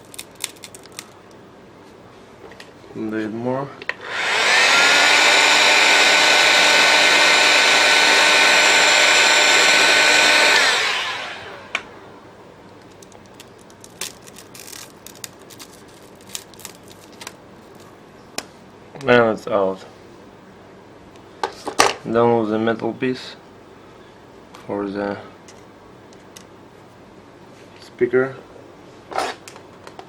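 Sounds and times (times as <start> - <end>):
heat gun blowing: 4.0 - 12.1.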